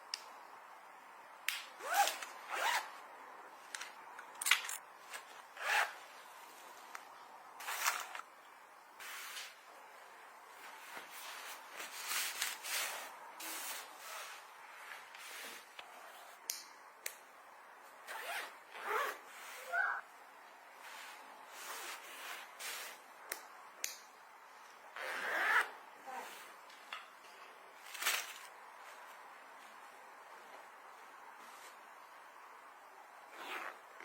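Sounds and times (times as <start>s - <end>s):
bags rubbing and handling: 1.8s - 2.9s, 5.0s - 6.8s, 7.6s - 8.2s, 10.6s - 16.3s
zipper pulled in short strokes: 5.6s - 6.0s, 33.3s - 33.8s.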